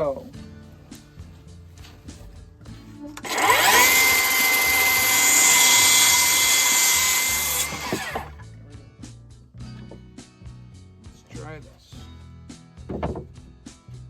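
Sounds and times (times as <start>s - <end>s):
electric power saw cutting wood: 3.2s - 8.4s.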